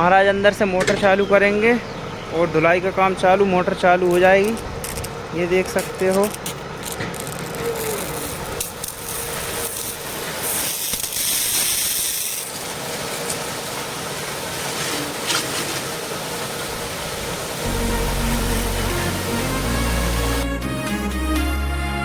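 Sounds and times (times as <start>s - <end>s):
water pump motor running: 1.0s - 20.6s
pressure washer water jet spraying: 7.3s - 20.4s.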